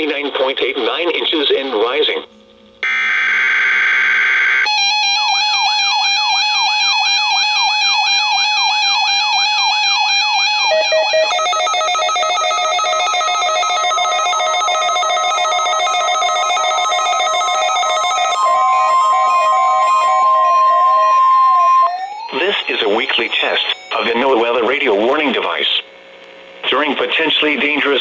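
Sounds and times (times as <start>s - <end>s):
electronic siren wail: 2.8s - 24.0s.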